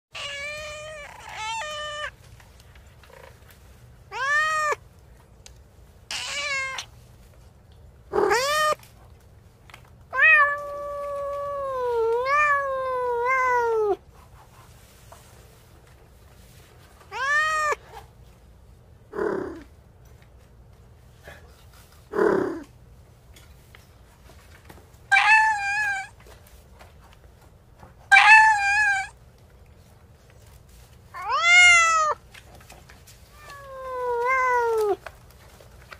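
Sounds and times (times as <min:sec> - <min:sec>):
harsh cat call: 0:00.1 - 0:02.1, 0:06.1 - 0:06.9, 0:25.1 - 0:26.1, 0:28.1 - 0:29.1, 0:31.2 - 0:32.2
cat meowing: 0:00.1 - 0:02.2, 0:04.1 - 0:04.8, 0:06.1 - 0:06.9, 0:08.1 - 0:08.8, 0:10.1 - 0:14.0, 0:17.1 - 0:17.8, 0:25.1 - 0:26.1, 0:28.1 - 0:29.2, 0:31.2 - 0:32.2, 0:33.4 - 0:35.0.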